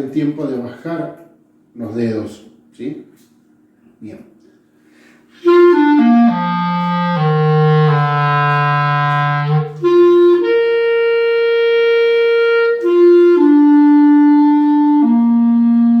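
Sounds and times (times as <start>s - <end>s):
clarinet playing sustained notes: 5.3s - 16.0s.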